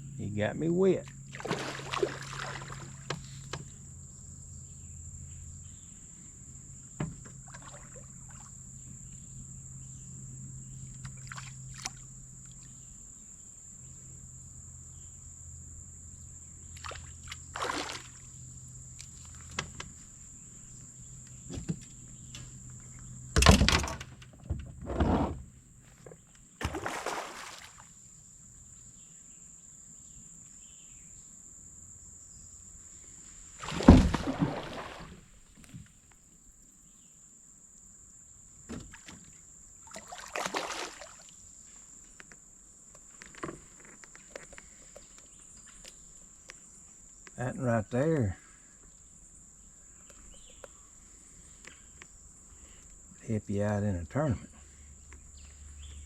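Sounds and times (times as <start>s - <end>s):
water splashes: 1.3s - 3.1s, 7.4s - 8.5s, 11.0s - 12.1s, 16.8s - 18.3s, 26.6s - 27.9s, 33.6s - 35.3s, 38.9s - 41.4s.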